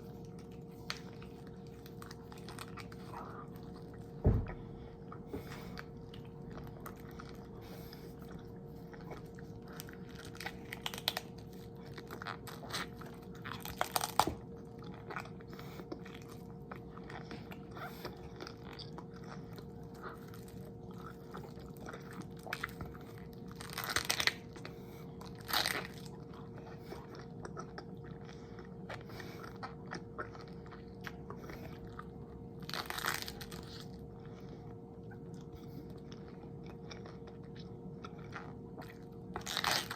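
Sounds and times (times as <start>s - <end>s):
chewing with crackles: 0.0s - 39.9s
faint steady hum: 0.0s - 39.9s
crunchy bites: 9.0s - 14.4s, 17.9s - 27.9s, 32.6s - 34.0s, 38.0s - 39.9s.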